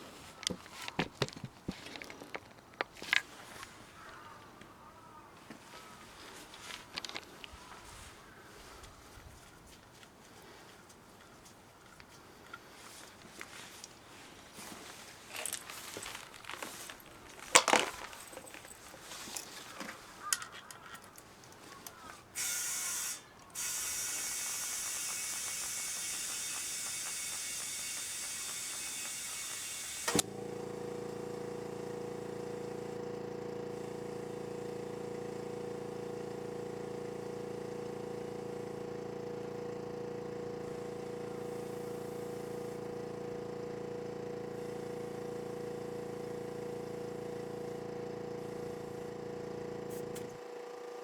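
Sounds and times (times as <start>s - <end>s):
sharp click: 21.8s - 30.3s
small electric motor drone: 21.8s - 51.0s
air hissing into tyre: 22.3s - 50.4s.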